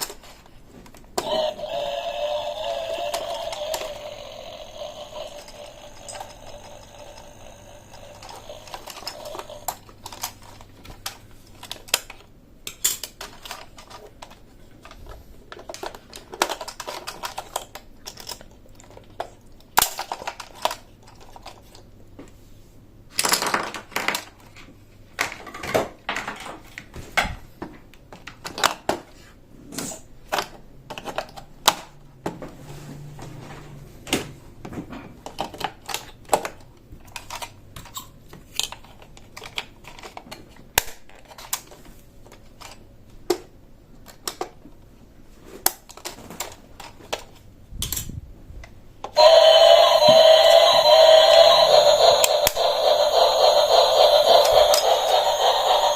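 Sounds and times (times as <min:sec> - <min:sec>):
plastic toy pieces clicking: 0:01.2 - 0:15.0, 0:15.6 - 0:21.8.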